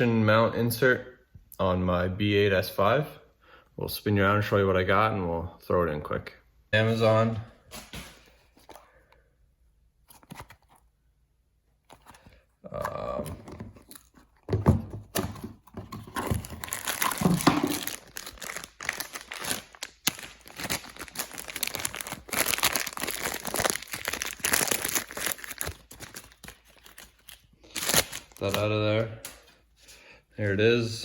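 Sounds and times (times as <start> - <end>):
packaging torn and crinkled: 16.2 - 29.4.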